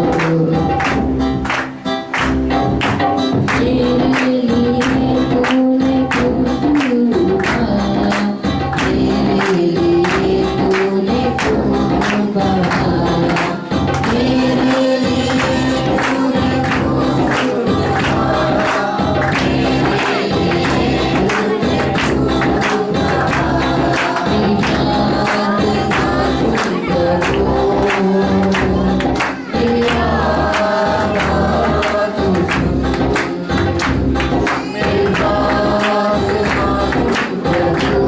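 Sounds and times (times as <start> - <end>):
voices singing together: 0.0 - 1.6, 3.3 - 38.0
percussion beat: 0.0 - 38.0.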